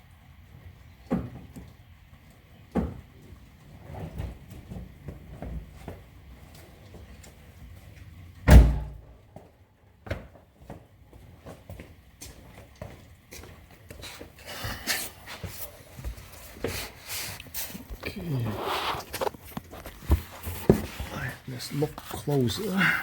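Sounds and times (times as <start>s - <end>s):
car door shutting: 8.5s - 9.0s.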